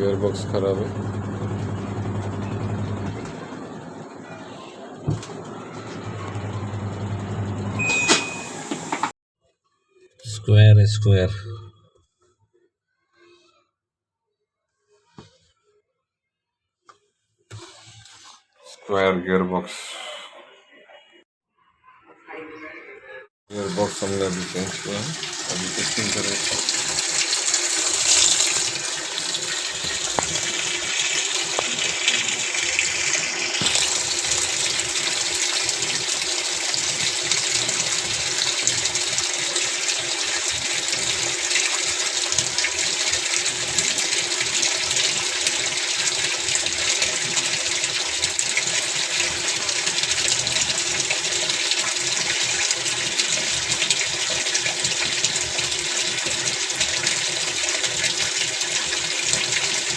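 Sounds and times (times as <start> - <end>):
water gushing into washing machine: 0.0 - 4.4, 5.0 - 9.1, 23.5 - 59.9.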